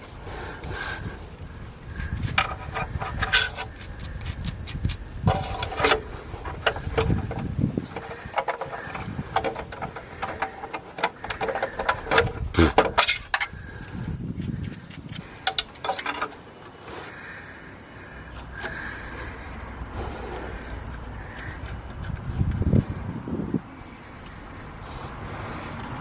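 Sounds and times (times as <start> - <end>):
metal hand tools clinking: 2.0 - 13.5.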